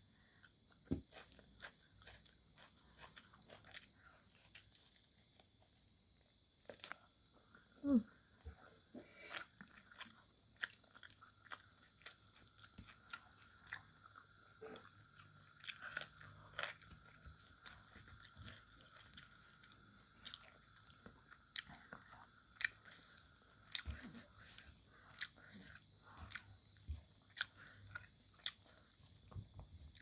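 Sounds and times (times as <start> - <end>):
person chewing crunchy food: 0.0 - 30.0.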